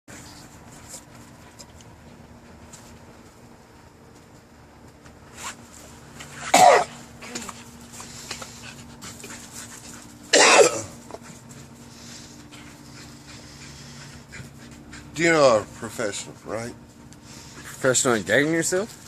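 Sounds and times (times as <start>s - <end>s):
dog retching: 6.4s - 7.0s, 10.3s - 11.0s.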